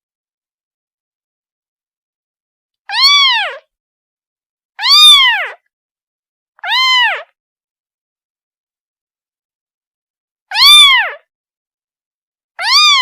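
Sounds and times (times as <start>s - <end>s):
kitten meowing: 2.9s - 3.7s, 4.8s - 5.6s, 6.6s - 7.4s, 10.5s - 11.2s, 12.6s - 13.0s.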